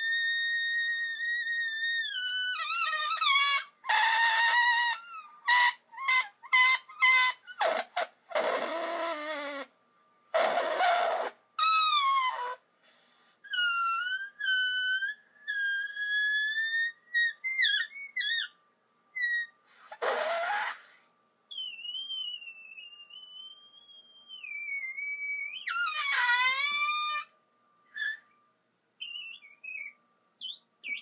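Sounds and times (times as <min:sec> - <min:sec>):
person whistling shrill tones: 0:13.4 - 0:28.4, 0:29.0 - 0:31.0.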